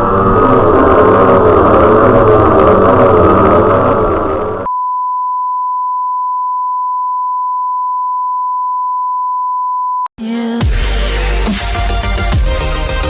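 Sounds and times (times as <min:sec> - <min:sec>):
electronic dance music: 0:10.6 - 0:13.0.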